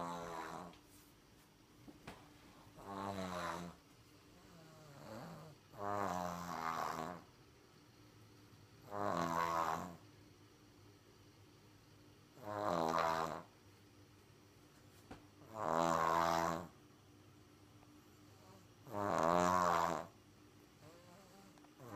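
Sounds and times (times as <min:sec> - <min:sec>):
heavy rattling snoring: 0:00.0 - 0:00.8, 0:02.8 - 0:03.8, 0:04.4 - 0:07.4, 0:08.8 - 0:10.0, 0:12.4 - 0:13.5, 0:15.4 - 0:16.7, 0:18.4 - 0:20.2.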